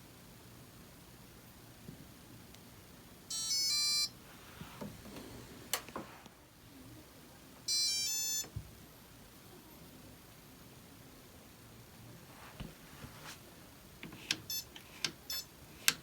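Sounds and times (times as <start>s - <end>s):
clicks: 14.0s - 16.0s
control panel beeping stepped tones: 14.2s - 16.0s.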